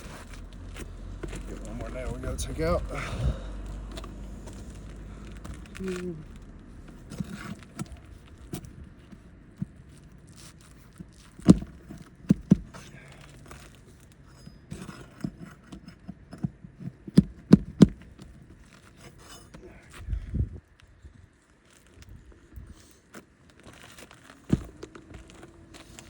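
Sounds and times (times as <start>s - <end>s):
scraping and rustling: 0.0s - 3.0s, 3.6s - 26.0s.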